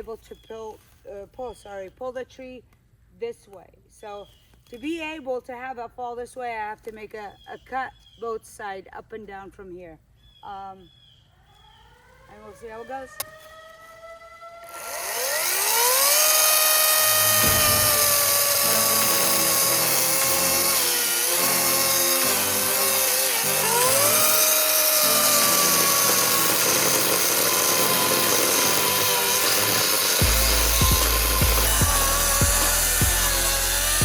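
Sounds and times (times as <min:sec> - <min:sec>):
electric chainsaw cutting wood: 0:12.3 - 0:34.0.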